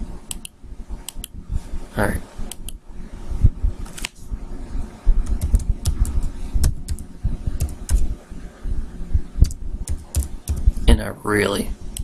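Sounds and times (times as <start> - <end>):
laptop keyboard typing: 0.3 - 0.5, 5.2 - 8.1, 9.4 - 10.9.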